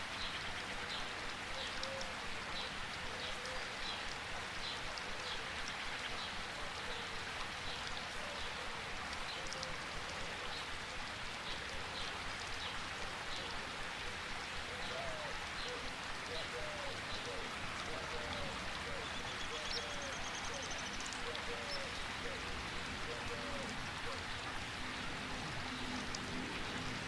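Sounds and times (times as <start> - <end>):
rain falling on foliage: 0.0 - 27.0.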